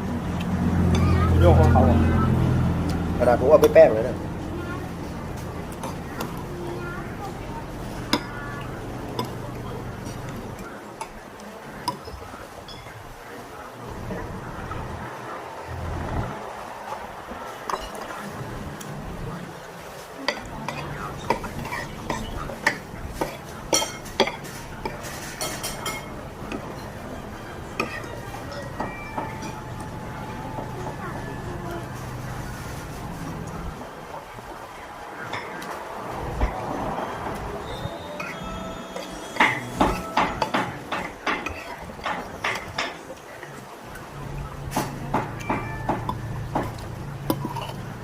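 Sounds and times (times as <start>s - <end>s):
cutlery clinking on a plate: 20.2s - 27.0s, 27.7s - 29.9s, 38.0s - 43.1s, 44.7s - 47.8s.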